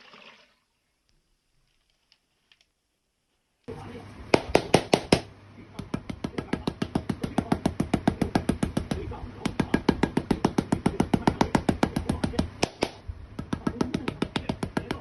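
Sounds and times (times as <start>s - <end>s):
rapid mechanical knocking: 4.3s - 15.0s.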